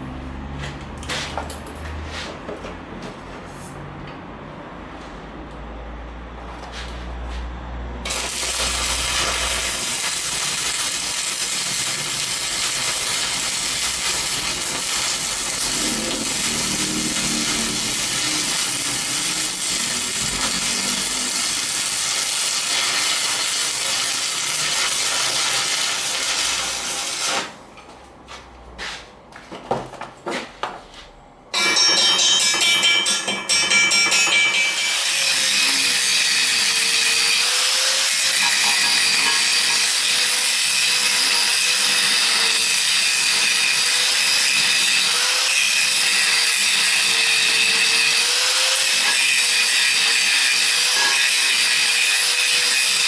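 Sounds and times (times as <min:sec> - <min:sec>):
power tool grinding: 0:08.1 - 0:27.5, 0:34.6 - 0:53.0.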